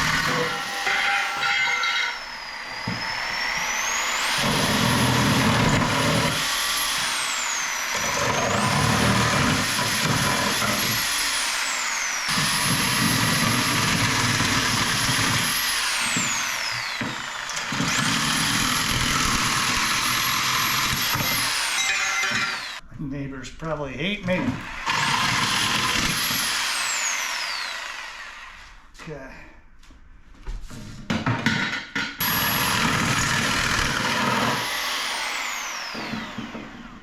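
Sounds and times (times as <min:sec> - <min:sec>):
power tool motor whine: 0:00.0 - 0:22.8, 0:24.6 - 0:28.8, 0:32.2 - 0:37.0.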